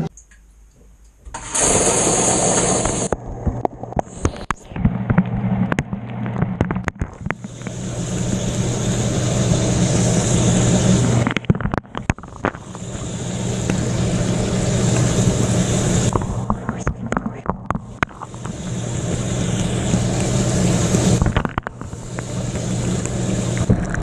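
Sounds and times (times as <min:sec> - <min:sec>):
dishwasher pump motor humming: 0:01.3 - 0:03.2, 0:04.0 - 0:24.0
water spraying and splashing: 0:01.4 - 0:03.2, 0:07.1 - 0:16.6, 0:17.8 - 0:24.0.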